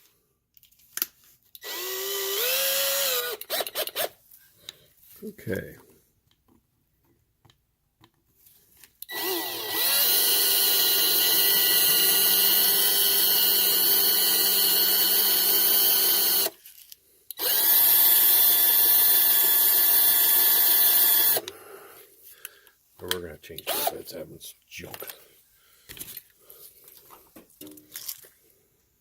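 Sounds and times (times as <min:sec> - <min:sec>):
power drill whining: 0:01.6 - 0:04.2, 0:09.1 - 0:16.6, 0:17.4 - 0:21.6, 0:23.7 - 0:24.0.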